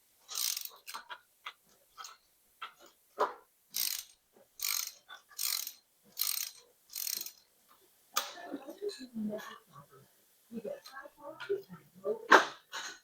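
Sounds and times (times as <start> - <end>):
socket ratchet wrench ratcheting: 0.3 - 1.2, 3.7 - 7.4.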